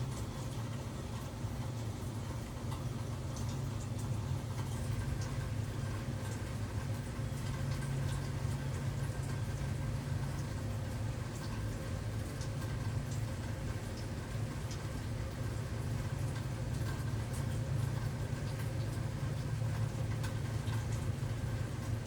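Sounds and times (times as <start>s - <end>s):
rain falling: 0.0s - 22.0s.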